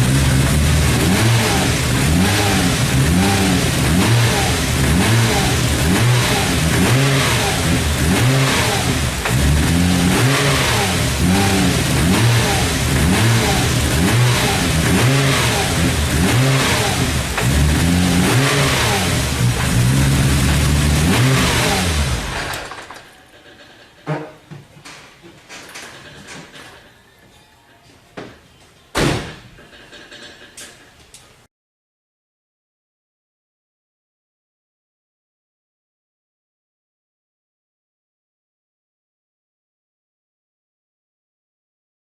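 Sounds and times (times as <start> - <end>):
car engine revving: 0.0 - 22.6.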